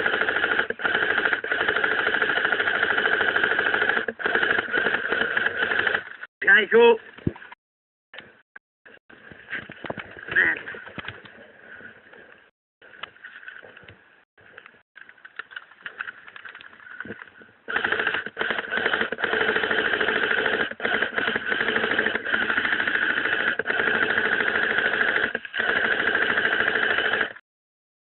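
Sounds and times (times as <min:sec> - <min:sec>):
airsoft rifle firing full auto: 0:00.0 - 0:06.0, 0:17.7 - 0:27.4.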